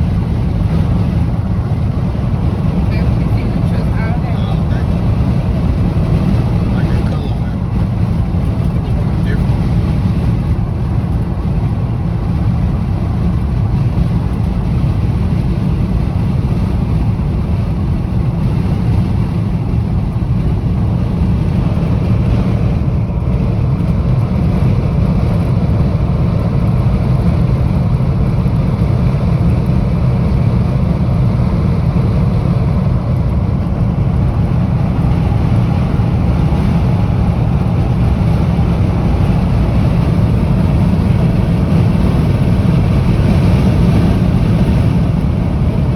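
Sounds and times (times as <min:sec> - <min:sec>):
wind blowing over microphone: 0:00.0 - 0:45.9.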